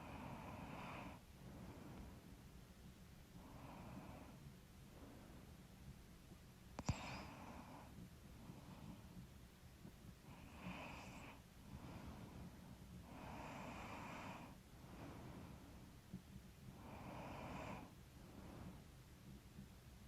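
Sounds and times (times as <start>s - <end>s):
woman breathing heavily in sleep: 0.0s - 2.5s, 3.4s - 5.6s, 6.8s - 9.2s, 10.3s - 15.9s, 16.7s - 18.9s
light snore: 6.8s - 7.9s, 10.3s - 12.2s, 13.0s - 15.6s, 16.7s - 18.8s.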